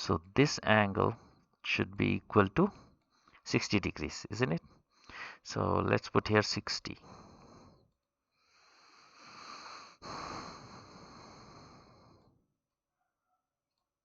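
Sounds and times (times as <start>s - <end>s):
breathing close to microphone: 4.6s - 5.5s, 7.0s - 12.4s.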